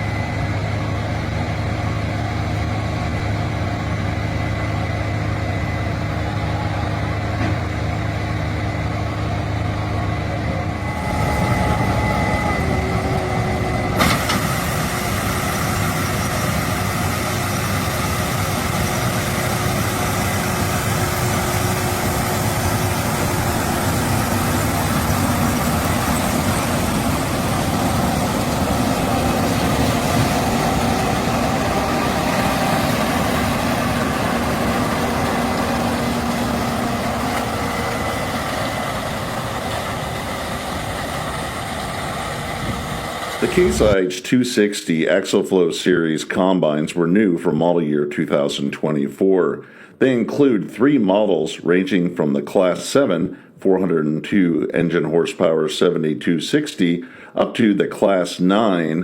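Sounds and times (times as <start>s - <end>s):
combine harvester engine droning: 0.0s - 44.2s.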